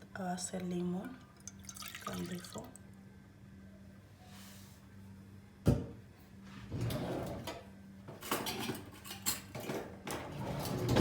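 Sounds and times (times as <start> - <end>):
kitchenware scraping: 6.7 - 11.0.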